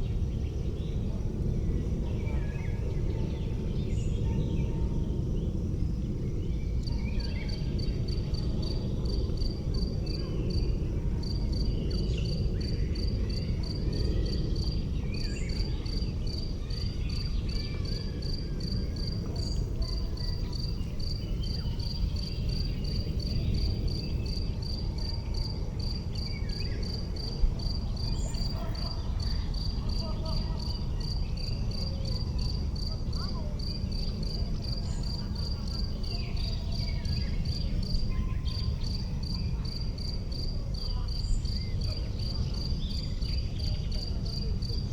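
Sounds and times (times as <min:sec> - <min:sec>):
insect chirping: 0:17.8 - 0:44.8.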